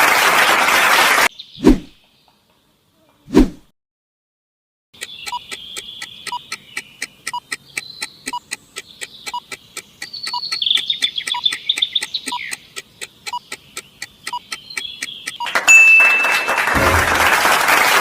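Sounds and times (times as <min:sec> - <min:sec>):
high chirping warble: 0:05.0 - 0:15.6
fast timer ticking: 0:05.0 - 0:17.0.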